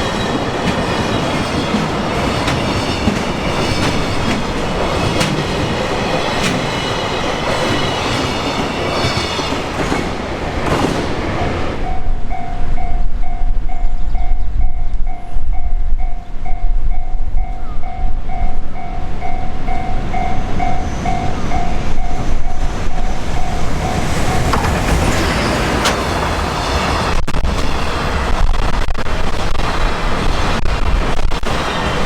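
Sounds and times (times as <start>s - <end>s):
train wheels clattering: 0.0s - 11.4s, 19.3s - 27.2s
level crossing warning bell: 11.8s - 24.6s
wheels squealing: 19.7s - 28.5s.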